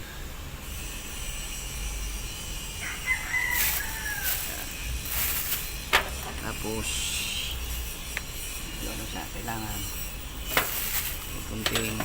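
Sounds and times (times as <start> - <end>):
rooster crowing: 2.8 - 5.8.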